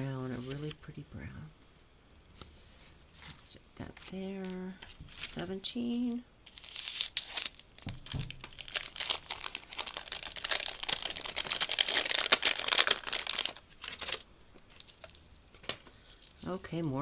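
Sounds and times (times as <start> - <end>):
wrapping crinkling and tearing: 6.5 - 16.6.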